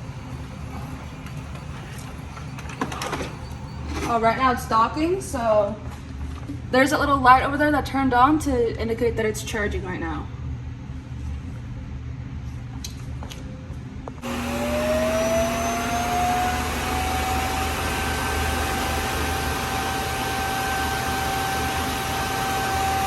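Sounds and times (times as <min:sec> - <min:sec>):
vacuum suction motor rushing: 0:14.2 - 0:23.0.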